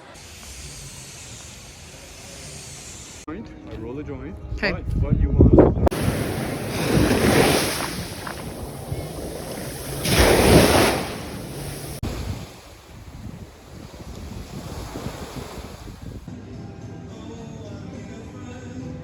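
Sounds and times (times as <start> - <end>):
waves washing on shore: 5.9 - 16.3.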